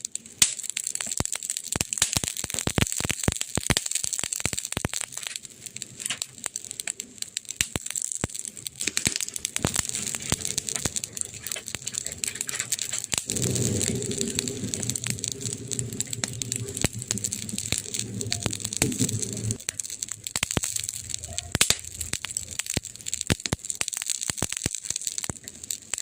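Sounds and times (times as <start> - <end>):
wood fire crackling: 0.0 - 26.0
low steady rumble: 9.7 - 23.3.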